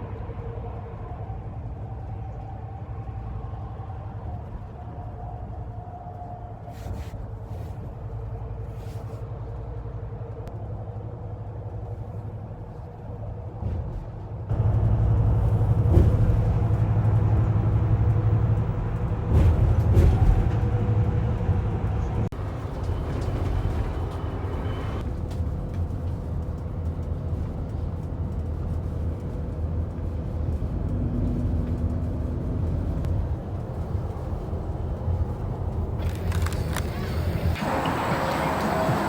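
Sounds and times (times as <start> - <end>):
vehicle engine and road rumble: 0.0 - 39.0.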